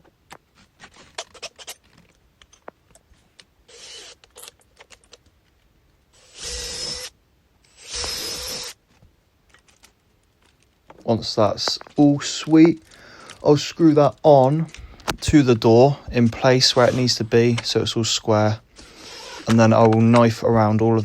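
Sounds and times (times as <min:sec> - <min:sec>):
tools and parts clicking: 0:00.8 - 0:05.6
power drill whining: 0:03.7 - 0:04.3, 0:06.2 - 0:08.8, 0:18.8 - 0:19.8.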